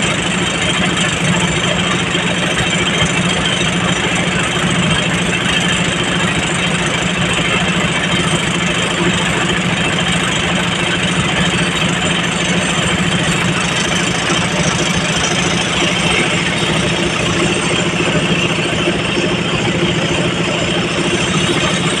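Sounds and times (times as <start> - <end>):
heavy diesel engine running: 0.0 - 22.0.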